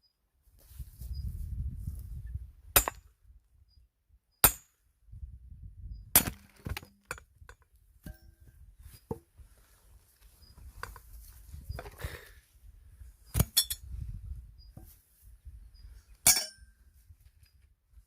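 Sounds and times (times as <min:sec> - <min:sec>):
axe striking firewood: 0:02.7 - 0:03.1, 0:04.4 - 0:04.8, 0:06.1 - 0:08.4, 0:13.3 - 0:13.8, 0:16.2 - 0:16.6.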